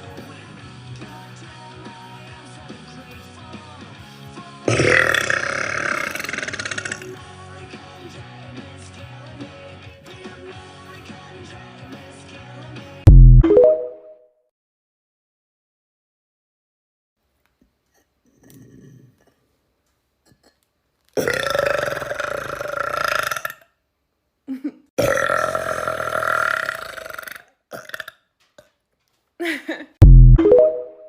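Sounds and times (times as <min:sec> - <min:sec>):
person burping: 0:04.7 - 0:07.2, 0:21.2 - 0:23.7, 0:25.0 - 0:28.2.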